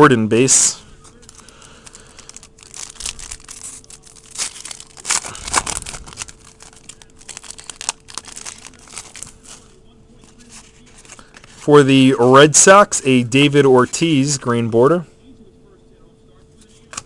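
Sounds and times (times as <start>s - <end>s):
trading cards rustling and flicking: 1.0s - 12.1s.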